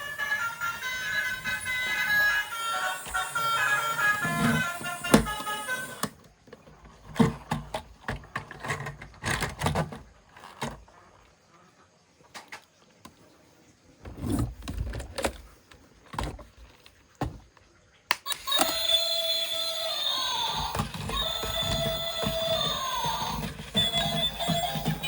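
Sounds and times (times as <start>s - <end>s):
toy electronic sound effect: 0.0s - 6.1s, 18.2s - 25.0s
plastic toys clicking and knocking: 0.1s - 10.9s, 18.1s - 25.0s.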